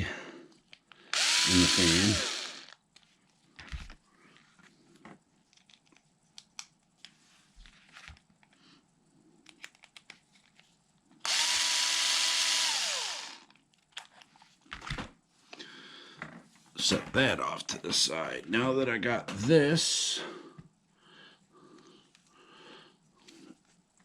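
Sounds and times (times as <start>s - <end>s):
cordless power driver running: 1.1s - 2.8s, 11.2s - 13.5s.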